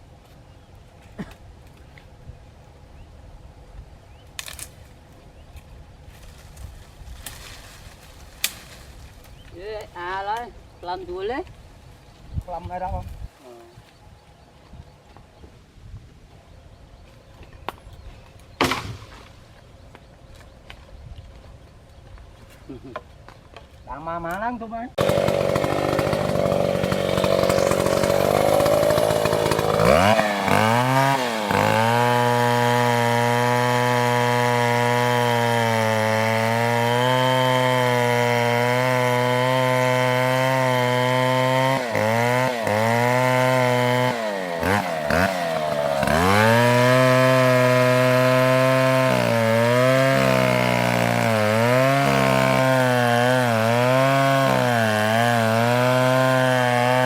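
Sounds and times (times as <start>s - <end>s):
chainsaw cutting wood: 6.2s - 9.5s, 18.6s - 19.3s, 25.0s - 57.0s.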